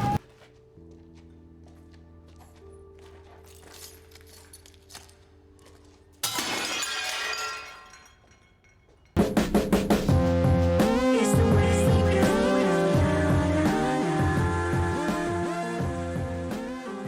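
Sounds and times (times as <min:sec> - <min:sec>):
glass shattering: 0:06.2 - 0:09.2.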